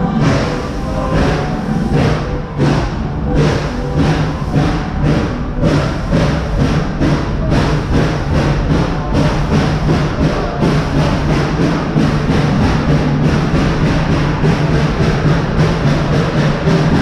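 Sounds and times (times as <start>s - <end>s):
music playing: 0.0s - 17.0s
train rumbling: 0.0s - 17.0s.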